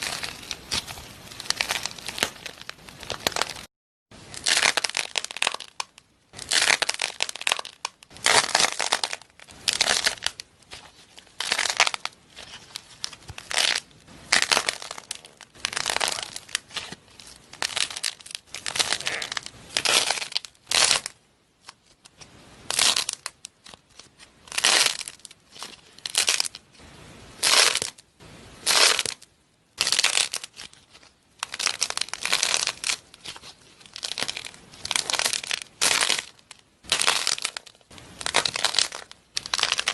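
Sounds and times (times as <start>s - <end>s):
clay cracking and crunching: 0.0s - 3.7s, 4.4s - 26.8s, 28.6s - 39.9s.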